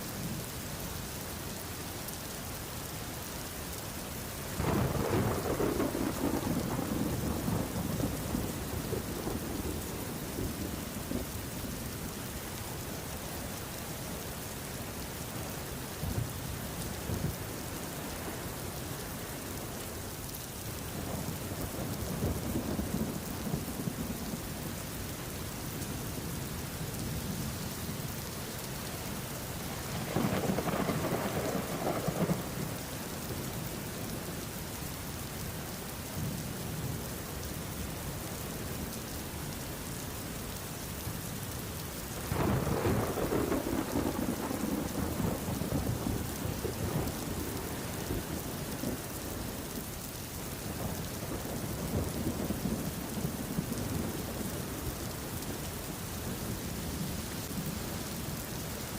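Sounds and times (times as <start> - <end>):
steady rain falling: 0.0 - 58.9
low rolls of thunder: 4.6 - 11.8, 21.0 - 24.5, 29.7 - 34.1, 42.2 - 49.7, 50.6 - 55.8.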